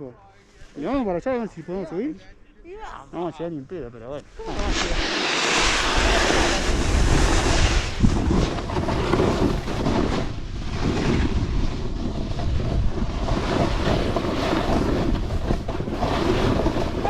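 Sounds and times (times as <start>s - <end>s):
skis hissing over snow: 4.3s - 11.2s, 13.0s - 17.0s
wind buffeting microphone: 4.3s - 17.0s.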